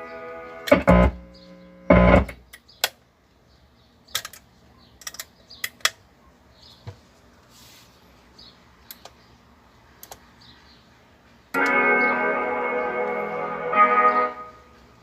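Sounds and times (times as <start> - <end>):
pitched test tone bursts: 0.7 - 2.4.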